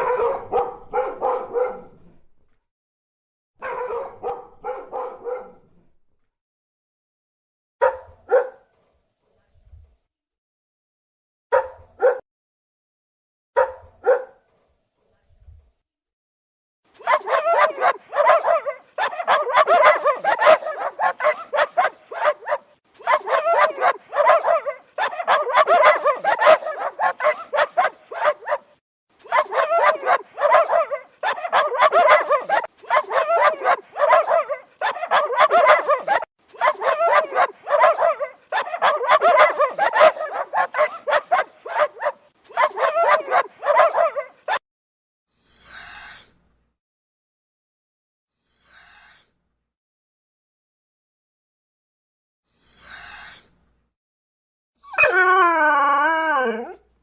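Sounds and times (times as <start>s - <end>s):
dogs barking rapidly: 0.0s - 1.9s, 3.6s - 5.6s, 7.8s - 8.6s, 11.5s - 12.2s, 13.6s - 14.4s, 17.0s - 44.6s.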